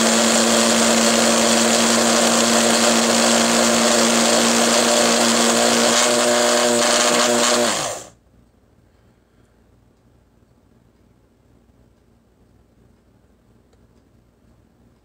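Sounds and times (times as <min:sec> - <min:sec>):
grinder motor grinding coffee beans: 0:00.0 - 0:08.1.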